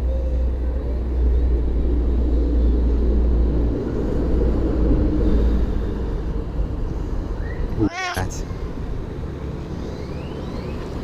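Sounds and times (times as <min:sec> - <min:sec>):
low rumble: 0:00.0 - 0:07.8.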